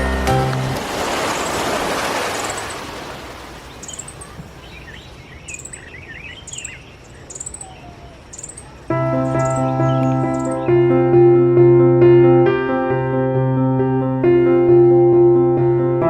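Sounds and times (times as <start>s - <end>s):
birds twittering: 1.1s - 11.3s.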